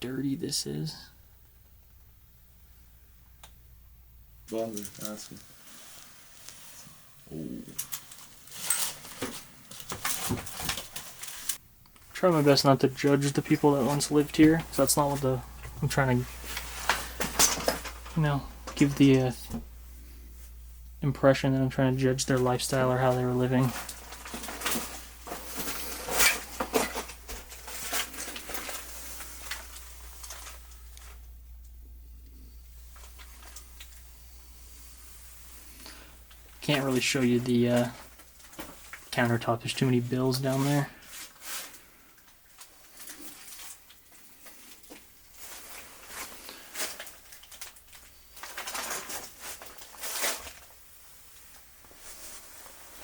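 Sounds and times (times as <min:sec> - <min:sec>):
clutter rustling and knocking: 0:07.7 - 0:21.4, 0:22.0 - 0:31.3, 0:32.4 - 0:39.5, 0:40.4 - 0:53.0.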